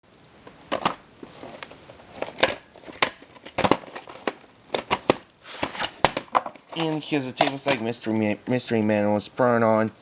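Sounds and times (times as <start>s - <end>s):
plastic cassette case clicks: 2.2s - 5.2s.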